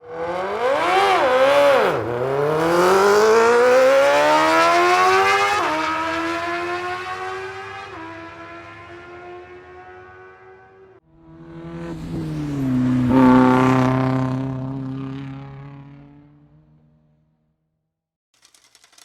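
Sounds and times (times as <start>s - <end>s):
racing engine accelerating: 0.0s - 16.6s.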